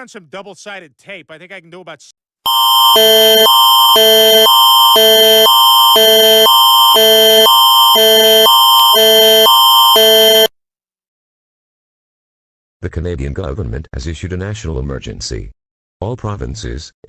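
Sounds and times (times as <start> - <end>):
electronic alert tone: 2.5 - 10.5.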